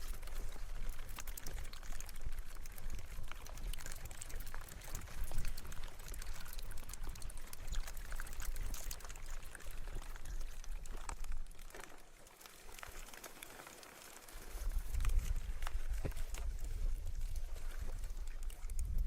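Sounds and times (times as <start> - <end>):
bike tyres crunching on loose ground: 10.0 - 19.0.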